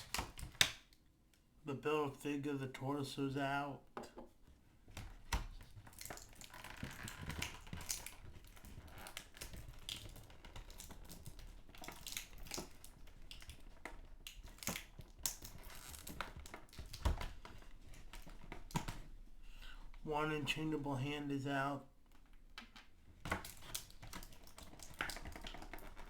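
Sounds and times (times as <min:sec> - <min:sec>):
plastic packaging crinkling: 0:05.8 - 0:18.6, 0:23.4 - 0:26.0.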